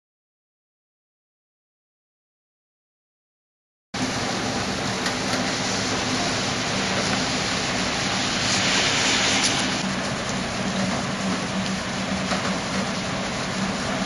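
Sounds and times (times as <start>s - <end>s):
heavy rain pouring: 4.0s - 14.0s.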